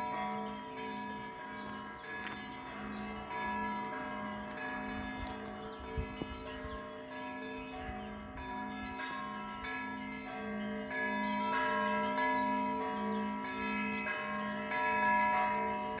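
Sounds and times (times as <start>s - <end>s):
high small bells ringing: 0.0s - 16.0s
low bell ringing: 0.0s - 16.0s.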